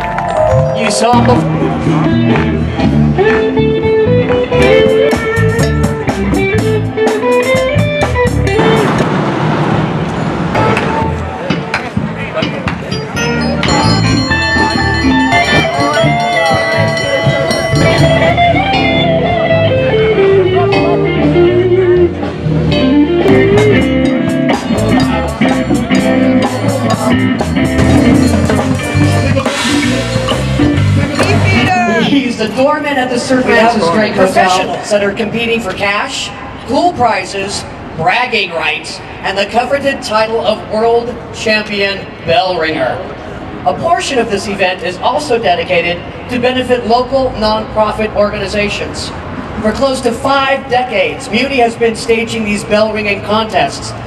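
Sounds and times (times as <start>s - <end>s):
electric guitar melody: 0.0s - 9.2s, 12.9s - 32.2s
bass guitar: 0.0s - 9.3s, 10.4s - 32.6s
drums: 1.5s - 32.2s.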